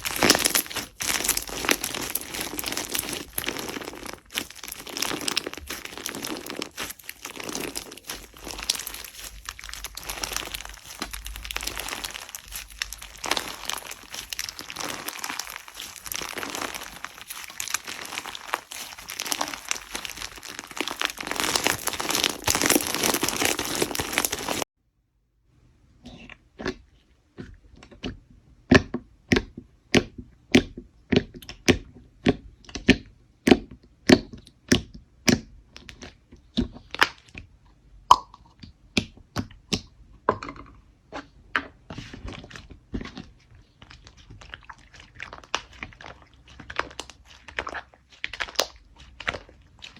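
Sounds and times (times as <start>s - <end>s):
slime popping: 0.0s - 24.6s, 44.0s - 49.9s
slime crunchy crackling: 0.0s - 24.7s, 42.0s - 49.9s.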